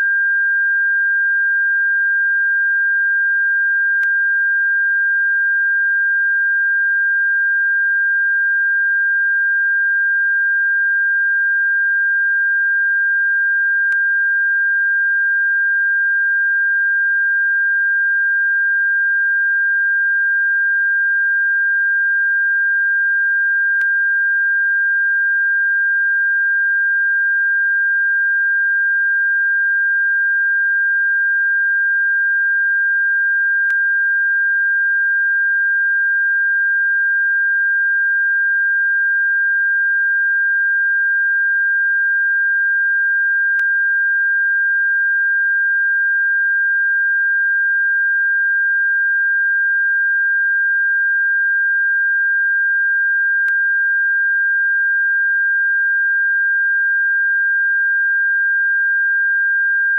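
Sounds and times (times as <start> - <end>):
steady electronic sine tone: 0.0 - 59.9.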